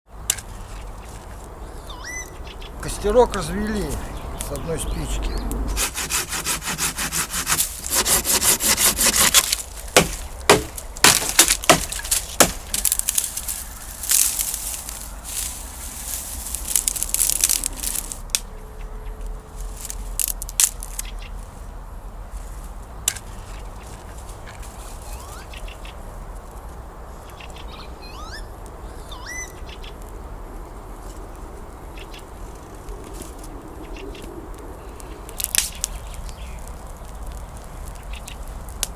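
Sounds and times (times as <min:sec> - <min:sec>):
campfire crackling: 0:00.2 - 0:18.5, 0:30.0 - 0:38.9
bird chirping: 0:01.6 - 0:05.8, 0:27.3 - 0:29.9.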